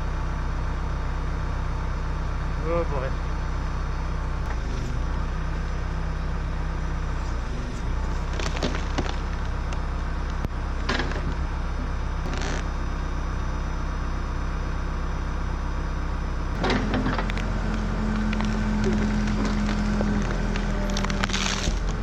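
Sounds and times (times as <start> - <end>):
backhoe engine running: 0.0 - 22.0
wood cracking and snapping: 8.2 - 11.4, 12.3 - 12.7, 16.6 - 22.0.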